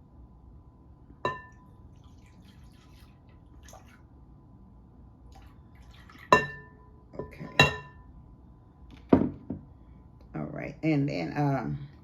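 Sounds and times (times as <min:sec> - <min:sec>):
glass clinking: 0:01.2 - 0:01.7, 0:06.3 - 0:08.1
milk trickling into bowl: 0:01.8 - 0:04.1.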